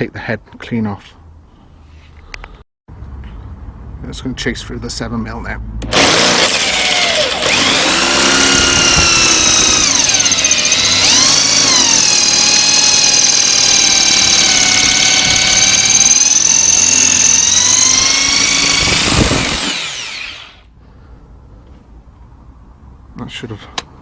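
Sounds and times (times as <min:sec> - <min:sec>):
electric drill drilling screw: 0:05.8 - 0:20.7.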